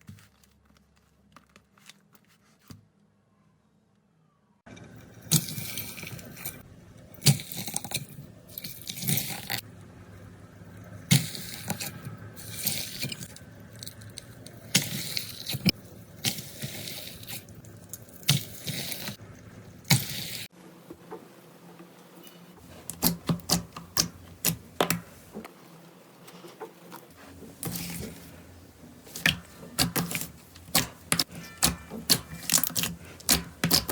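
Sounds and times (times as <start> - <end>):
slime squishing: 10.9 - 20.5, 22.6 - 25.4, 26.3 - 33.9.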